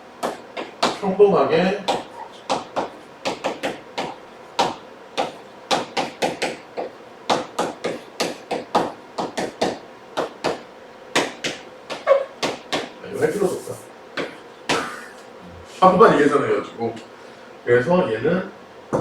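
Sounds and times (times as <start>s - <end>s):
writing tool tapping a surface: 1.9s - 10.6s.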